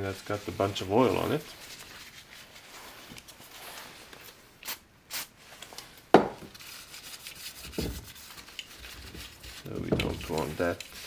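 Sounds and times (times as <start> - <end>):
cloth rubbing on metal: 0.0 - 4.2, 6.4 - 11.0.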